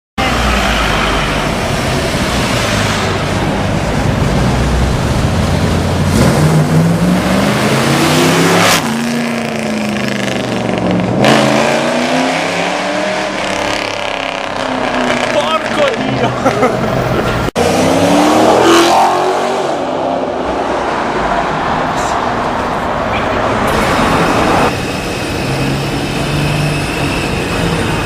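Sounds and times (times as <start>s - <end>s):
car engine accelerating: 0.2s - 22.1s.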